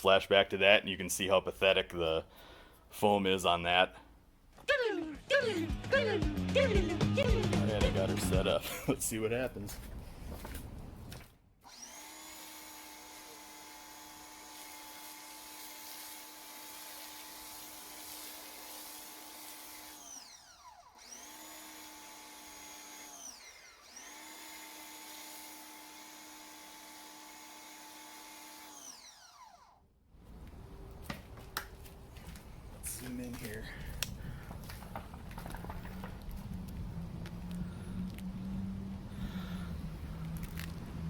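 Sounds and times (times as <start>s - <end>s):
pressure washer motor and pump: 11.7s - 29.7s.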